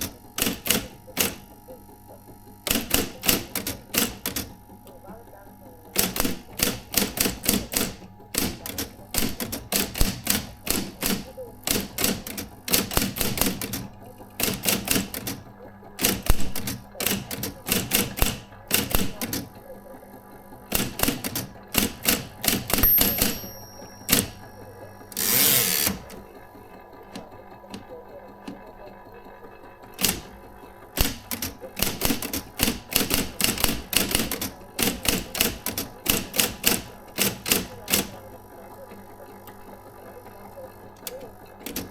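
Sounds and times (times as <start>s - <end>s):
typewriter key strikes: 0.0s - 1.5s, 2.6s - 4.6s, 5.9s - 15.4s, 16.0s - 19.5s, 20.7s - 26.2s, 30.0s - 38.2s, 41.0s - 41.9s
typewriter motor hum: 0.0s - 41.9s.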